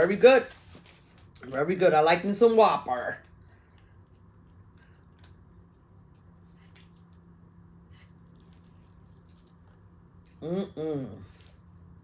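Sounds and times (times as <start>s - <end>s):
steady low hum: 0.0s - 12.0s
person chewing food: 3.6s - 10.5s.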